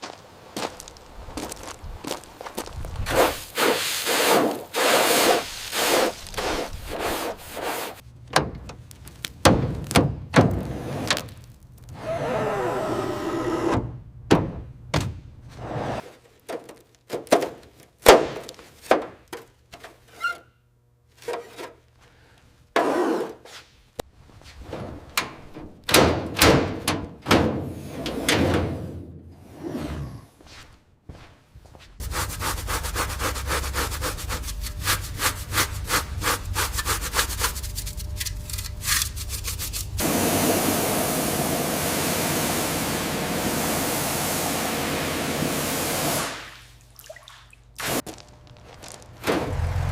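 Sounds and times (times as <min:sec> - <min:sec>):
rubbing and scraping: 0:03.0 - 0:08.0, 0:31.9 - 0:40.0.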